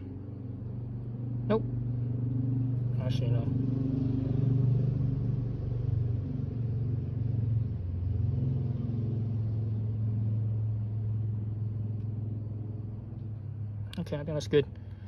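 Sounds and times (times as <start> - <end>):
low mechanical rumble: 0.0 - 15.0.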